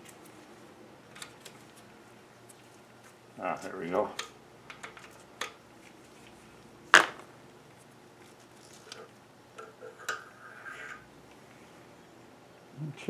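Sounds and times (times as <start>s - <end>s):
short scrape: 9.8s - 11.0s.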